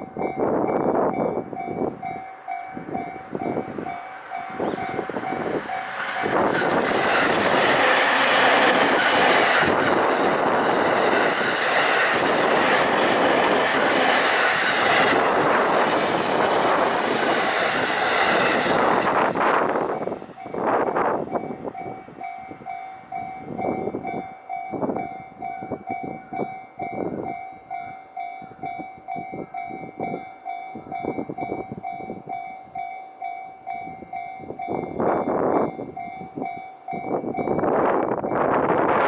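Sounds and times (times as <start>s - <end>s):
level crossing warning bell: 0.0s - 38.6s
train rumbling past: 0.0s - 39.0s
wheels clacking over rail joints: 2.0s - 19.0s.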